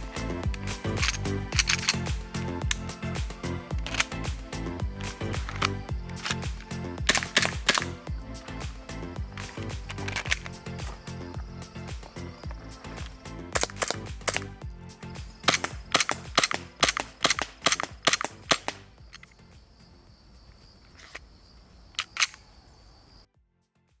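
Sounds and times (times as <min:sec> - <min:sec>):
airsoft pistol shots: 0:07.1 - 0:08.0, 0:15.5 - 0:18.9.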